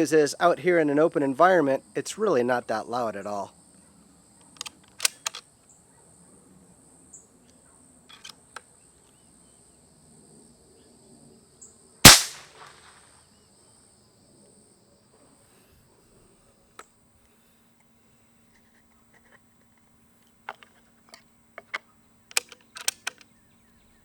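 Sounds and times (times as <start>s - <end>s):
air rifle shot: 12.1s - 12.9s.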